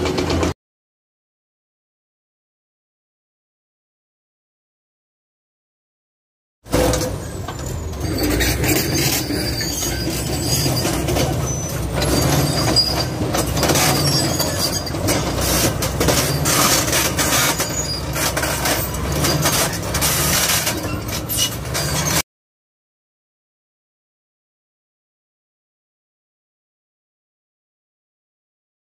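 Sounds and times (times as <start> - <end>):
excavator diesel engine: 0.0 - 0.6, 6.7 - 22.2.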